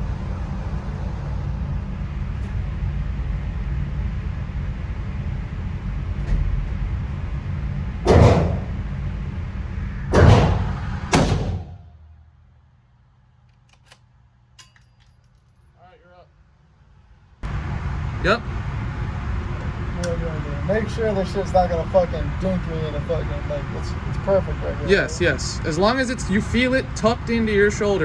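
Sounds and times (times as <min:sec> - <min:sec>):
steady low hum: 0:00.0 - 0:28.0
rifle shots: 0:08.1 - 0:08.9, 0:10.1 - 0:11.9.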